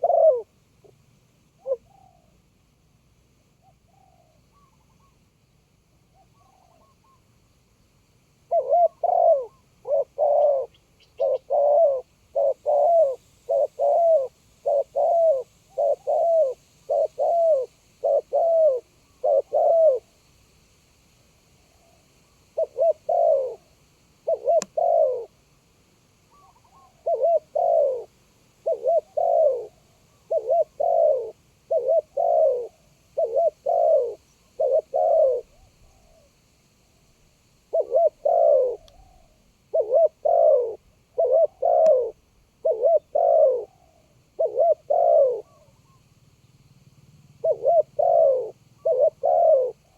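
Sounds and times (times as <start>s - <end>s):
dove cooing: 0.0s - 2.4s, 6.1s - 7.2s, 8.5s - 20.1s, 22.6s - 25.4s, 26.3s - 36.4s, 37.7s - 46.0s, 47.2s - 49.9s.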